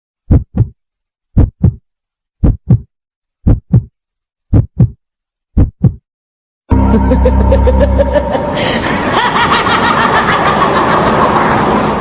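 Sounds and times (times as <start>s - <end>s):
heartbeat thumps: 0.3s - 0.8s, 1.4s - 1.8s, 2.4s - 3.9s, 4.5s - 5.0s, 5.6s - 6.0s.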